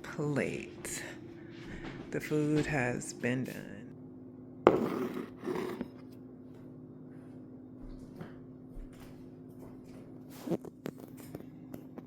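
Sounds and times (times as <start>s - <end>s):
steady low hum: 0.0s - 12.0s
household knocks and clicks: 4.7s - 6.0s.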